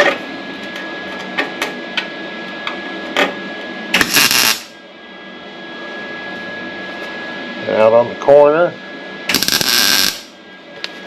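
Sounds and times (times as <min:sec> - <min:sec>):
steady hum with high tone: 0:00.0 - 0:11.0
welder crackling: 0:04.0 - 0:04.7, 0:09.3 - 0:10.4.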